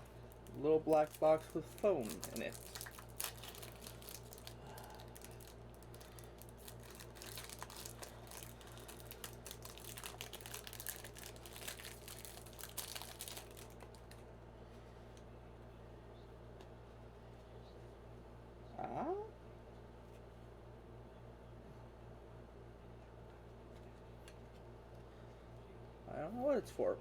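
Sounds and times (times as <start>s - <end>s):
packaging crinkling and rustling: 0.0s - 14.3s
low steady hum: 0.0s - 27.0s.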